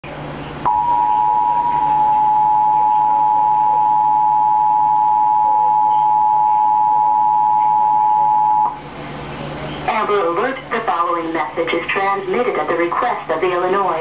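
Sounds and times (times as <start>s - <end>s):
two-tone alarm: 0.6s - 8.8s.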